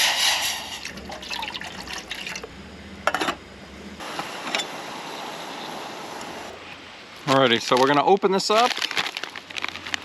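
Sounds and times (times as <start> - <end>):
gas stove hissing: 0.0 - 1.0, 2.6 - 6.6.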